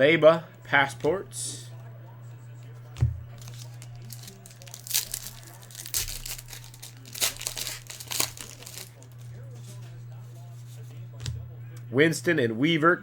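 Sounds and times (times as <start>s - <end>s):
low electrical hum: 0.0s - 13.0s
foil wrapper tearing and crinkling: 3.4s - 9.3s.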